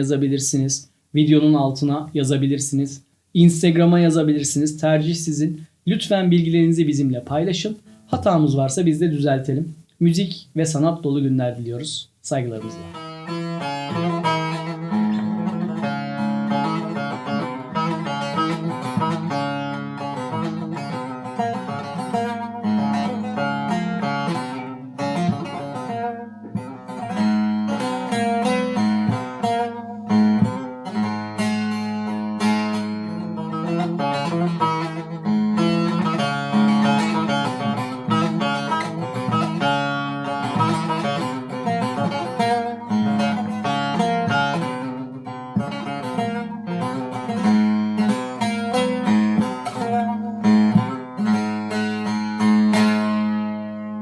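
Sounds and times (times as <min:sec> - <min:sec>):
plucked lute melody with drone: 0:12.6 - 0:54.0.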